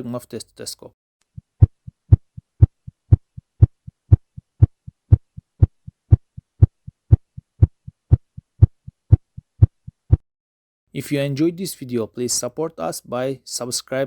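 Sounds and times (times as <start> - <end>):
heartbeat through stethoscope: 1.3 - 10.3.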